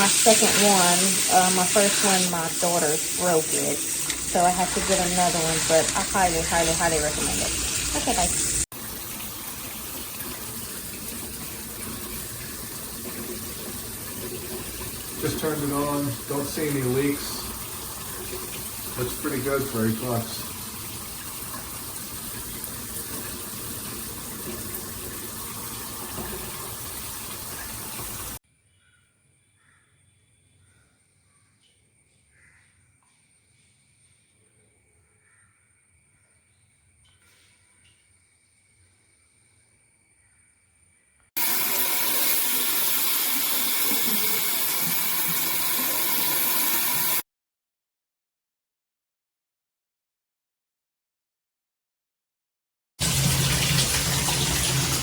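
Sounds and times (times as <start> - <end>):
water spraying from shower head: 0.0 - 28.4, 41.4 - 47.2, 53.0 - 55.0.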